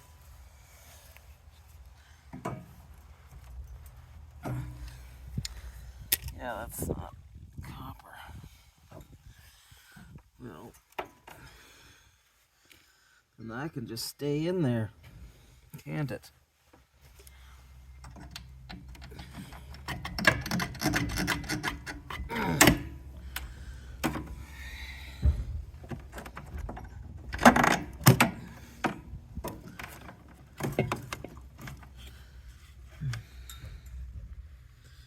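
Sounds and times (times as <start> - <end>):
metal parts knocking and clattering: 18.1 - 22.9, 25.9 - 31.9.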